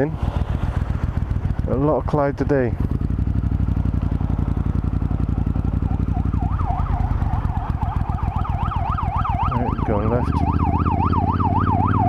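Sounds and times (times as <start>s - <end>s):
motorcycle engine humming: 0.0s - 12.0s
emergency vehicle siren wailing: 5.3s - 12.0s.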